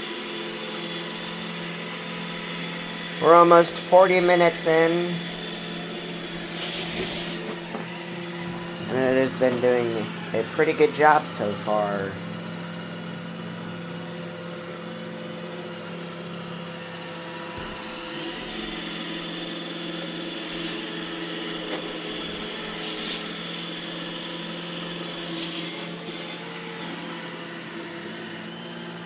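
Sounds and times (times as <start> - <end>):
robot vacuum motor whining: 0.0 - 29.0.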